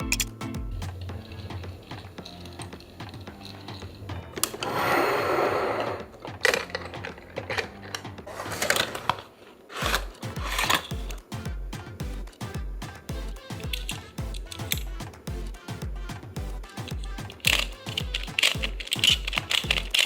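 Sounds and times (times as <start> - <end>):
background music with bass beat: 0.0 - 8.9, 9.8 - 20.0
toy packaging clicks and taps: 17.0 - 20.0.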